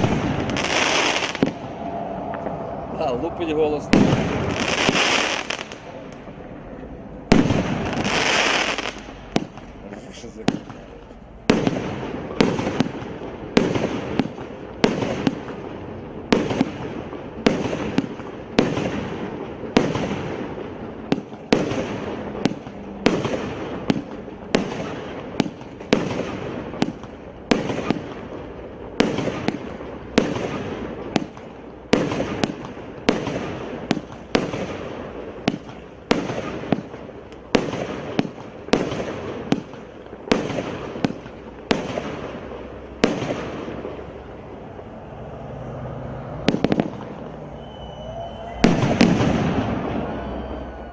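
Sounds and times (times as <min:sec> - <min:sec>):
fireworks bangs: 0:00.0 - 0:50.9.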